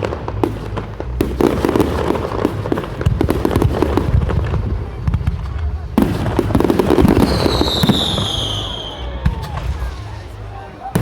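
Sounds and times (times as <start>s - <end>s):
low rumble: 0.0s - 7.9s
fireworks crackling pops: 0.0s - 11.0s.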